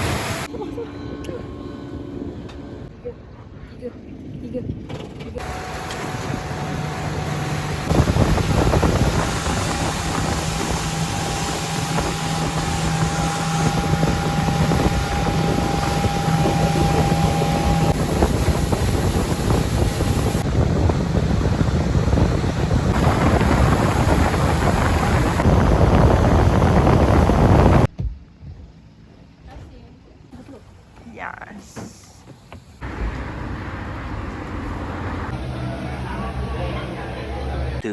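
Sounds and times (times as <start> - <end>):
water noise: 0.0 - 0.6, 5.4 - 27.9
motorboat engine hum: 0.0 - 2.9, 5.4 - 29.4, 32.3 - 37.9
wind noise on microphone: 7.8 - 28.7.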